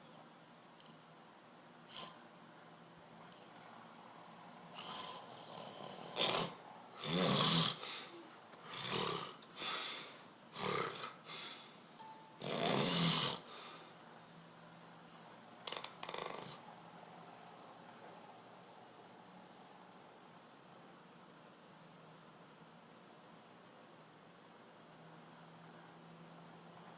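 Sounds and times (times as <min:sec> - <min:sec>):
man snoring loudly: 0:04.8 - 0:08.0, 0:08.6 - 0:09.4, 0:10.6 - 0:11.2, 0:12.4 - 0:13.5.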